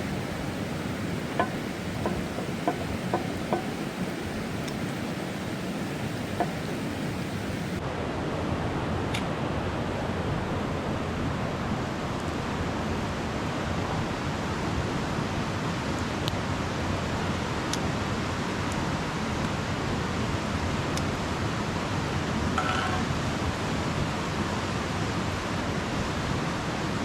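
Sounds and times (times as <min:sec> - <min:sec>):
faint sharp clicks: 0:00.0 - 0:07.8
river rushing: 0:00.0 - 0:08.7.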